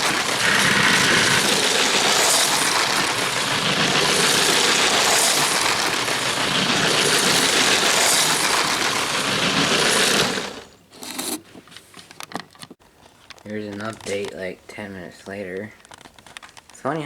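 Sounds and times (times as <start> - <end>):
toy train whirring clatter: 0.0 - 11.4.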